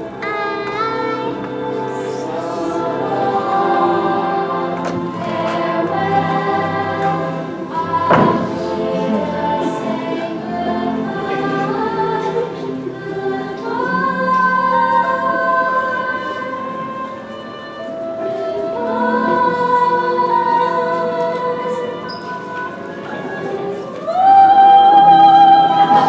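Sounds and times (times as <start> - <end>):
choir singing held notes: 0.0 - 26.0
thump: 8.0 - 8.6.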